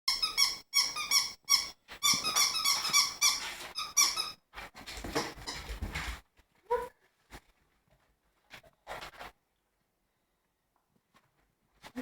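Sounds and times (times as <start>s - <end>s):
squeaky dog toy: 0.1s - 4.4s.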